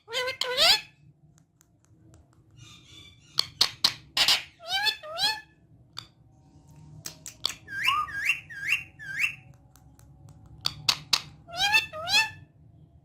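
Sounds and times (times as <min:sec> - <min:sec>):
parrot whistling: 0:07.4 - 0:09.4.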